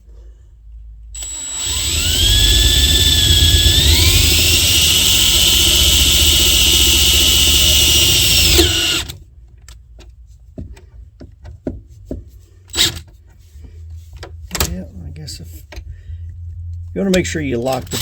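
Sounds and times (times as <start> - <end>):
electric drill whining: 1.2 - 9.2.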